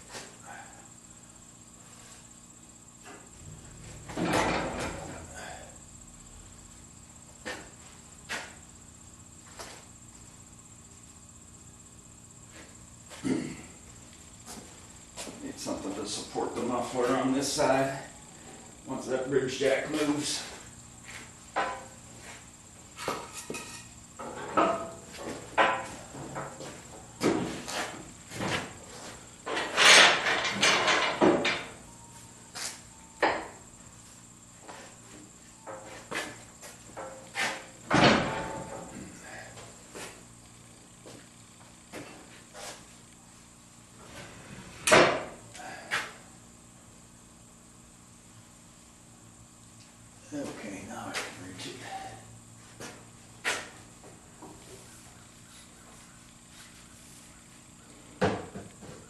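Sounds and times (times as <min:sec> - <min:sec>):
faint steady hum: 0:00.0 - 0:59.0
parts knocking and clunking: 0:03.0 - 0:05.5, 0:21.5 - 0:22.0, 0:23.0 - 0:28.8, 0:29.4 - 0:31.8, 0:35.6 - 0:39.1.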